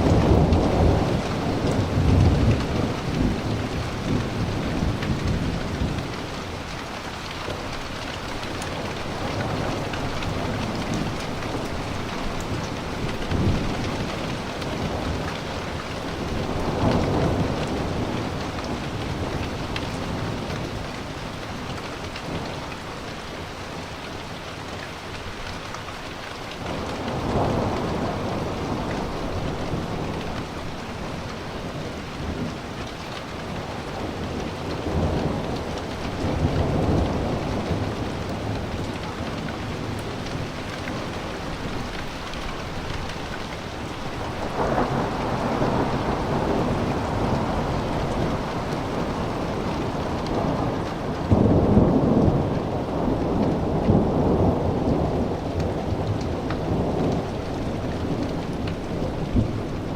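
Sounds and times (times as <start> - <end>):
rolling thunder: 0.0 - 6.6, 33.8 - 59.9
steady rain: 0.0 - 59.9.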